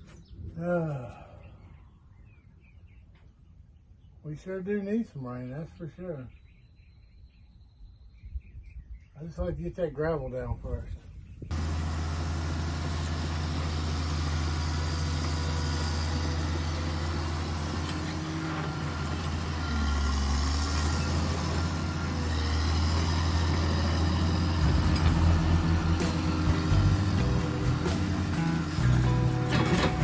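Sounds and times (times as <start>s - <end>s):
bulldozer diesel engine running: 11.5s - 30.0s.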